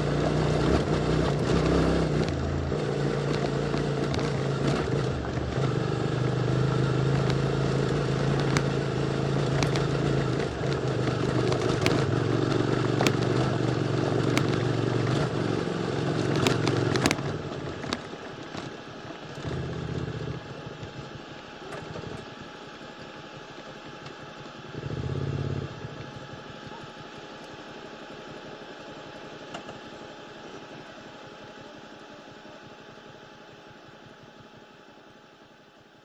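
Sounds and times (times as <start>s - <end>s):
motorcycle engine running: 0.0s - 29.2s
sharp clicks: 7.2s - 15.6s, 16.2s - 18.7s.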